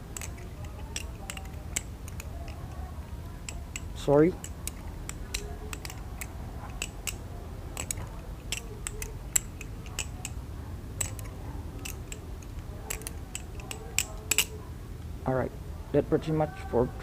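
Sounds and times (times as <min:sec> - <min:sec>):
butterfly knife metallic clicks: 0:00.1 - 0:07.2, 0:07.8 - 0:10.4, 0:11.0 - 0:14.6.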